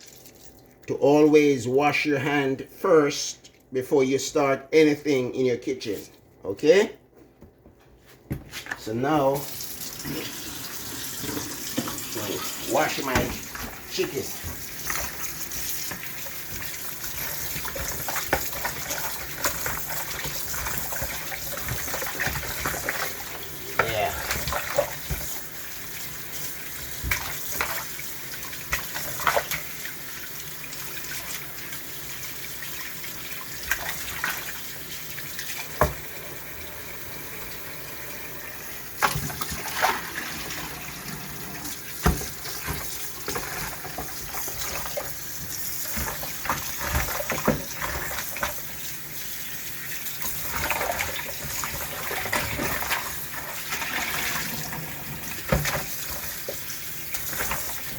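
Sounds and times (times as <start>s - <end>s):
chicken rinsed by hand: 9.2s - 36.2s, 38.6s - 57.9s
tap running into a sink: 9.8s - 25.5s, 35.6s - 36.2s, 39.0s - 48.6s, 50.2s - 57.9s.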